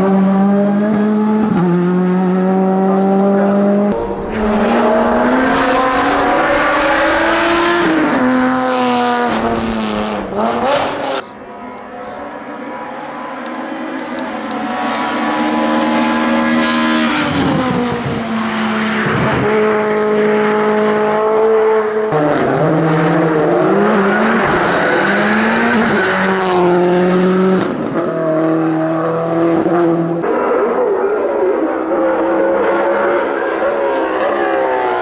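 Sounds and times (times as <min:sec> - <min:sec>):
race car engine revving: 0:00.0 - 0:35.0.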